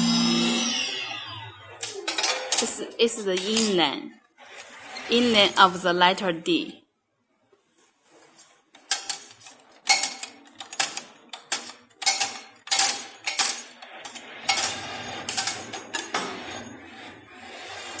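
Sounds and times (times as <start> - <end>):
low machine hum: 0.0 - 4.0
bending machine clacking: 8.9 - 17.2.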